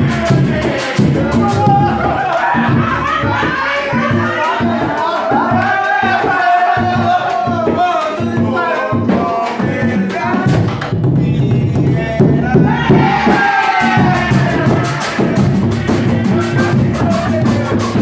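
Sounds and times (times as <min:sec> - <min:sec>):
drums and bass beat: 0:00.0 - 0:18.0
person singing: 0:00.0 - 0:18.0.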